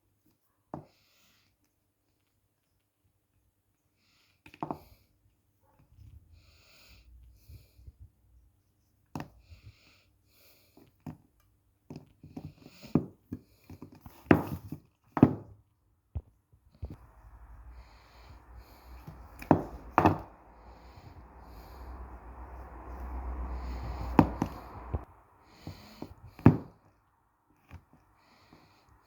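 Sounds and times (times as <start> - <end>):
low rushing noise: 16.9 - 26.5
knife chopping clay: 19.0 - 20.2.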